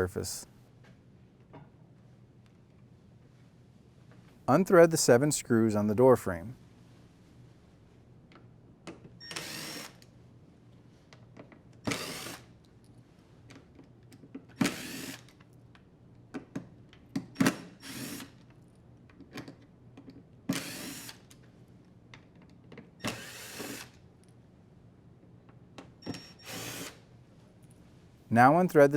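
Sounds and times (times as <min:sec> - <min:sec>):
drill driver whirring: 0:09.2 - 0:10.1, 0:11.8 - 0:12.6, 0:14.5 - 0:15.4, 0:17.4 - 0:18.4, 0:20.5 - 0:21.3, 0:23.0 - 0:24.0, 0:26.0 - 0:27.0.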